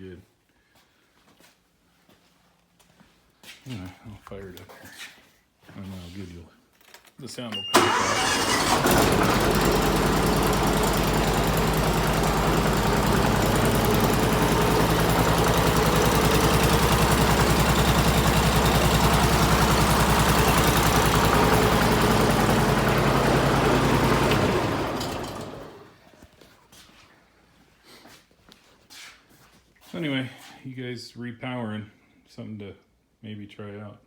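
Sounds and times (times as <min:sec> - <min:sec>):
engine idling: 0:07.8 - 0:26.0.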